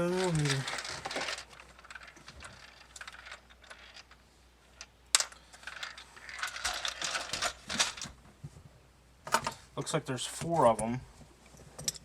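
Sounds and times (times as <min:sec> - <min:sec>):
metallic clicks of bolts and tools: 0:11.8 - 0:12.0.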